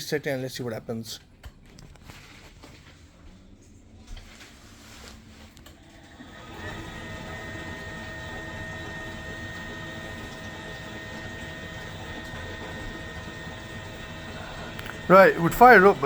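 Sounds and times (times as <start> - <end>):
boiler running with whine: 1.5 - 16.0
boiler gurgling: 6.0 - 16.0.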